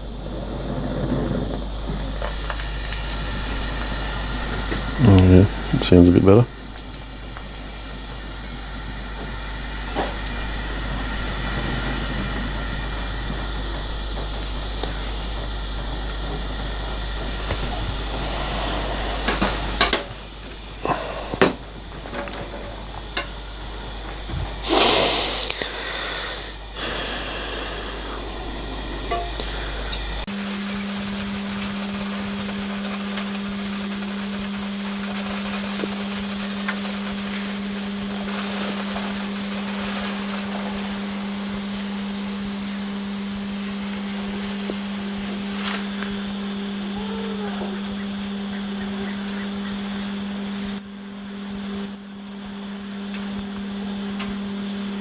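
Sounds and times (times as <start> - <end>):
constant low hum: 0.0 - 55.0
gas torch hissing: 0.0 - 55.0.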